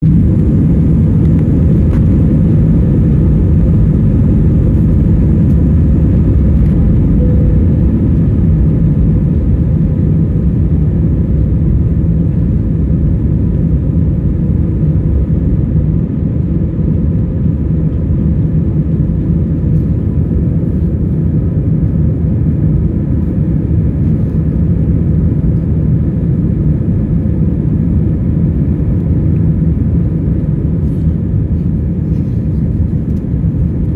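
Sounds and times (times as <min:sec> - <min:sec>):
jet airliner taking off: 0:00.0 - 0:33.9
faint steady tones: 0:06.7 - 0:09.9.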